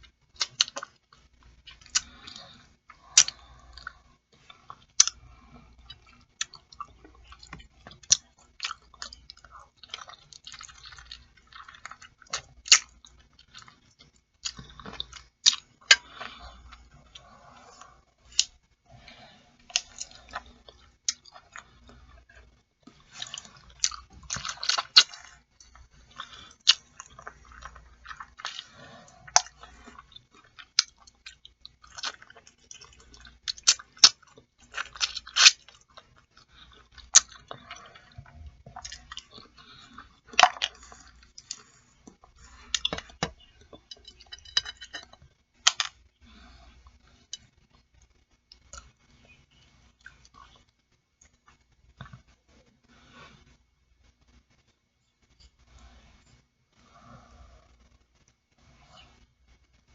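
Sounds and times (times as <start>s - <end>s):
chewing mouth sounds: 19.7s - 46.0s.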